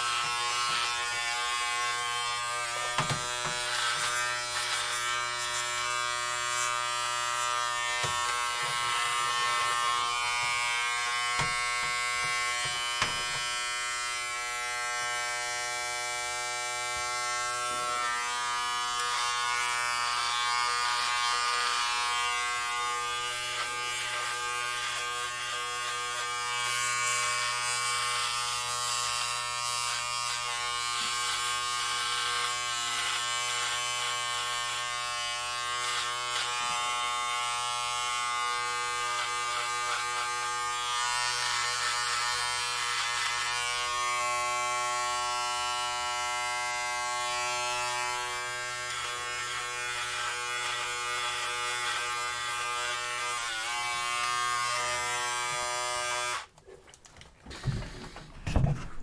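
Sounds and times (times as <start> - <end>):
electric hair clippers buzzing: 0.0 - 56.6.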